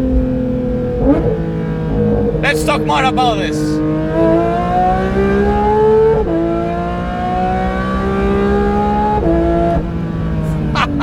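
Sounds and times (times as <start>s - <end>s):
sports car engine accelerating: 3.8s - 11.0s.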